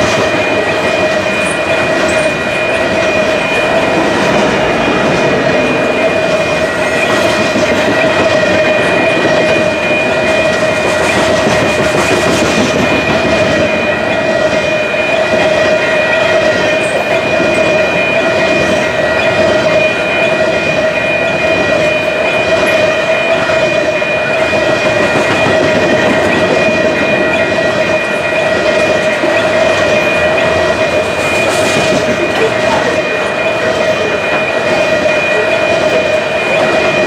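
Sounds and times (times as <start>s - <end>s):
freight train wheels clattering: 0.0s - 37.0s
steady high ringing tone: 0.0s - 37.0s.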